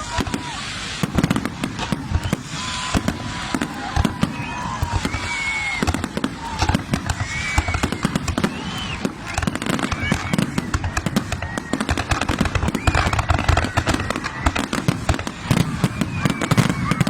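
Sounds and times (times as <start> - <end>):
fireworks bangs and crackles: 0.0 - 17.0
whistling fireworks: 0.0 - 17.0.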